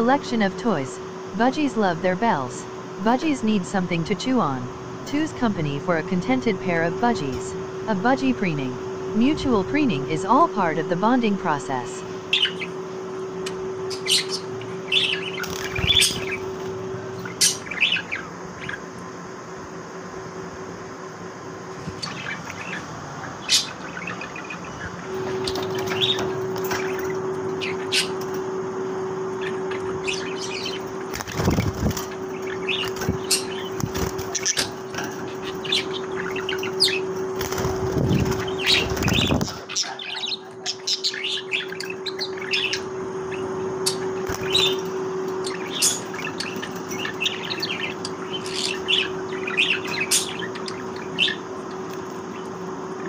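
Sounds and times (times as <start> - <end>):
steady low hum: 0.0 - 18.8, 23.7 - 53.0
budgerigars chirping: 45.4 - 51.4.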